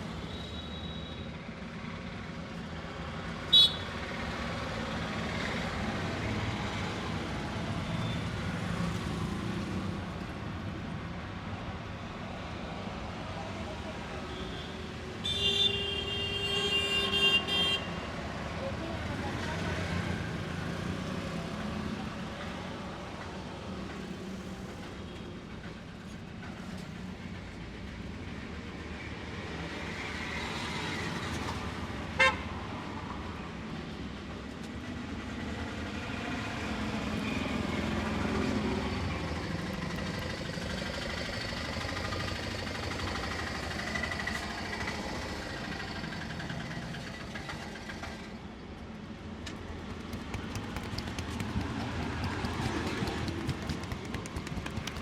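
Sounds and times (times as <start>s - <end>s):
street traffic noise: 0.0s - 55.0s
vehicle horn toot: 3.5s - 3.9s, 14.4s - 17.9s.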